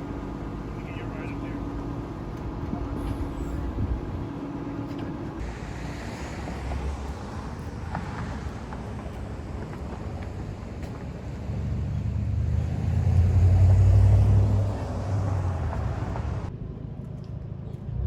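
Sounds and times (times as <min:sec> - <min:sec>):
road traffic rumble: 0:00.0 - 0:18.0.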